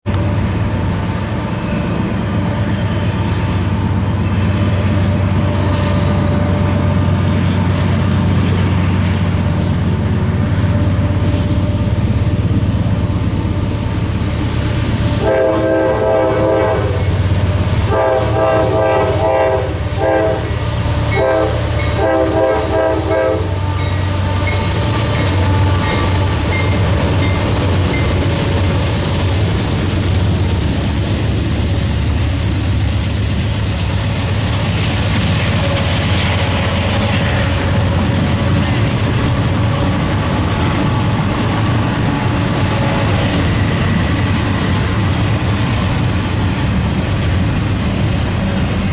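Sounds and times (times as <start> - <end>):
freight train rumbling past: 0.0 - 48.9
train wheel clatter: 0.0 - 48.9
locomotive horn blasts: 15.1 - 27.1.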